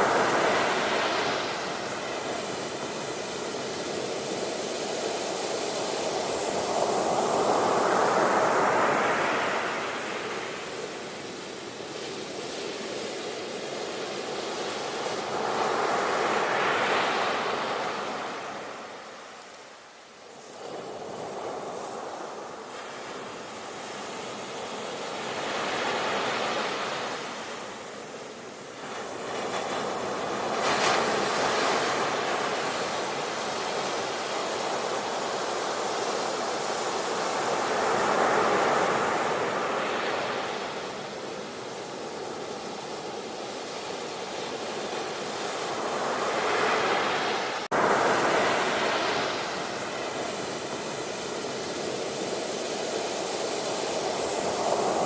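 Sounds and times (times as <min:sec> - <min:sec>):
sea waves breaking ashore: 0:00.0 - 0:55.0.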